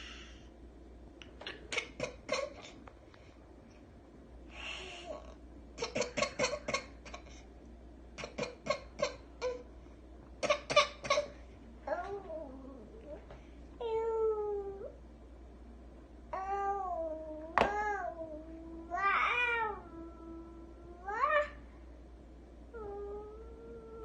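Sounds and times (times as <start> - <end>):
cat wheezy hissing breaths: 0.0 - 0.5, 4.5 - 5.2
cat coughing: 1.5 - 2.8, 5.8 - 7.4, 8.2 - 9.6, 10.4 - 11.4.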